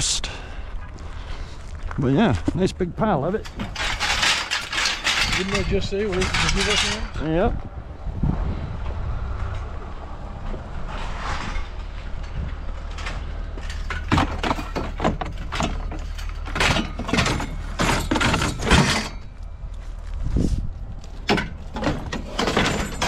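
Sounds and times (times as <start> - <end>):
irregular knocks and clanks: 2.3 - 7.5, 8.8 - 19.5, 21.1 - 23.0.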